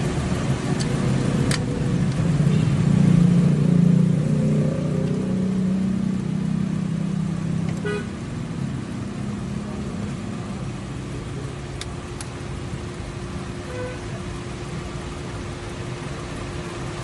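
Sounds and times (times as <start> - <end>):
car horn toot: 7.8 - 8.2, 13.7 - 14.1.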